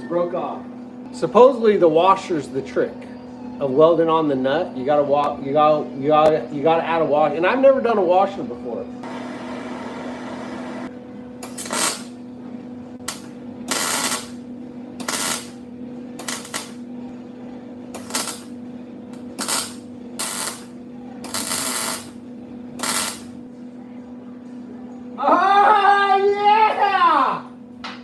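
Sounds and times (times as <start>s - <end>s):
electrical hum: 0.0s - 27.9s
welder arc crackling: 11.4s - 12.2s, 13.0s - 16.9s, 18.0s - 22.2s, 22.8s - 23.4s.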